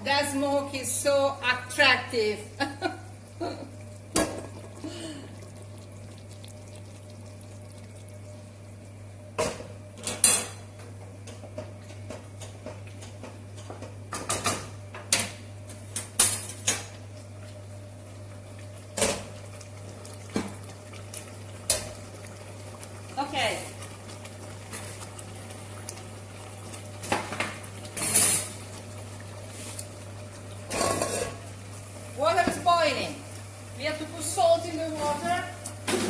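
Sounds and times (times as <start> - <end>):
steady low hum: 0.0 - 36.0
pots and utensils clattering: 9.4 - 10.7, 27.0 - 28.6, 30.7 - 31.4.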